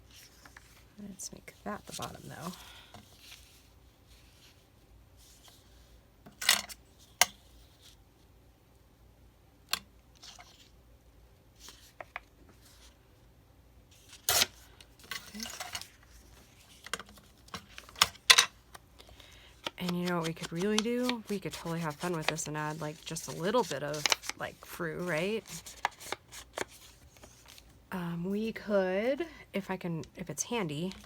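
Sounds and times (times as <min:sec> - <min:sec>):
paper rustling: 0:01.8 - 0:04.6, 0:19.0 - 0:27.7.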